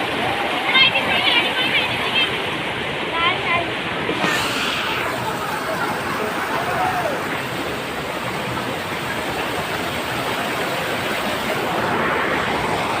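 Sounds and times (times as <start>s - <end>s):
waterfall rushing: 3.4s - 13.0s.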